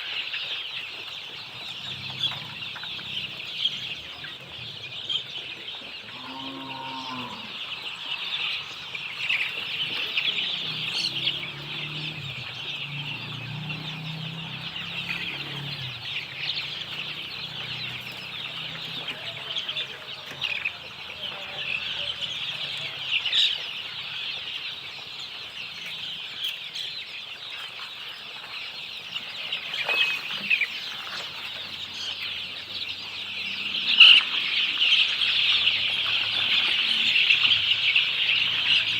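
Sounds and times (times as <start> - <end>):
chickens clucking: 0.0 - 38.9
low chicken calls: 1.4 - 5.0, 5.8 - 16.4.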